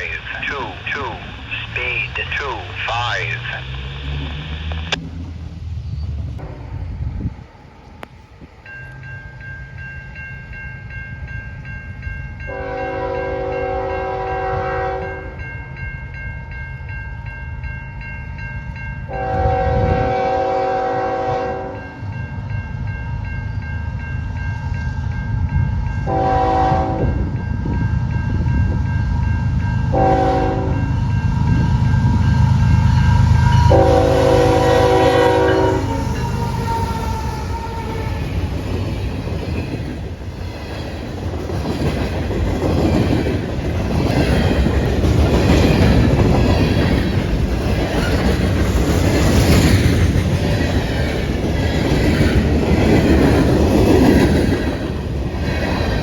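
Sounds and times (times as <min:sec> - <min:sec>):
low rumble of train: 0:00.0 - 0:56.0
locomotive air horn blasts: 0:12.5 - 0:15.2, 0:19.1 - 0:21.8, 0:26.1 - 0:27.2, 0:29.9 - 0:30.8, 0:33.4 - 0:36.6.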